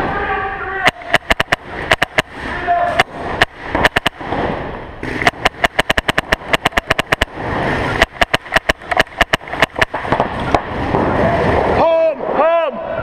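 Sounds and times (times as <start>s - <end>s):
paintball markers firing: 0.8s - 4.3s, 5.0s - 7.3s, 7.9s - 10.7s.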